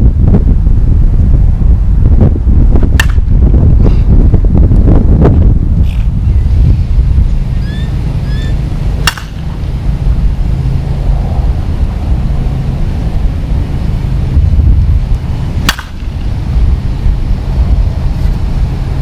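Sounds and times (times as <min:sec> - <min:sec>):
wind rumbling on microphone: 0:00.0 - 0:19.0
bat cracking a ball: 0:02.9 - 0:03.3, 0:09.0 - 0:09.6, 0:15.6 - 0:16.3.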